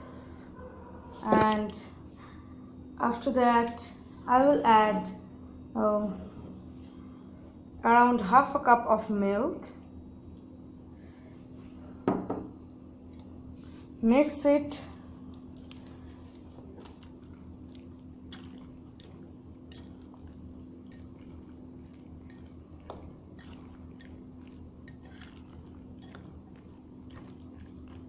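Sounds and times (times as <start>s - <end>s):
wet squishing: 15.6s - 28.0s.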